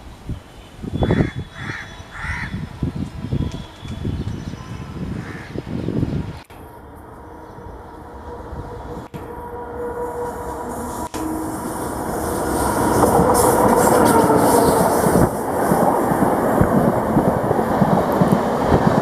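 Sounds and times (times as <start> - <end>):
train passing at speed: 0.0 - 19.0
wheels clattering over rail joints: 8.0 - 19.0.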